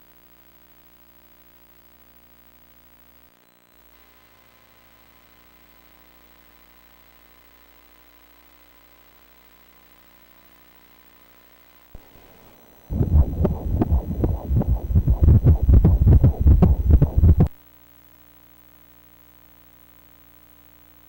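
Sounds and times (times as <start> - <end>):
fetal heartbeat pulsing whoosh: 12.9 - 17.6.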